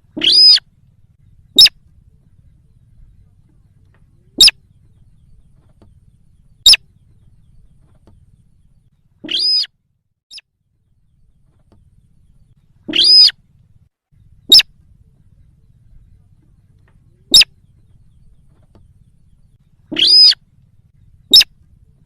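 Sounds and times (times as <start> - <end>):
high-pitched bird lure call: 0.2 - 0.6, 9.2 - 9.7, 12.9 - 13.4, 19.9 - 20.4.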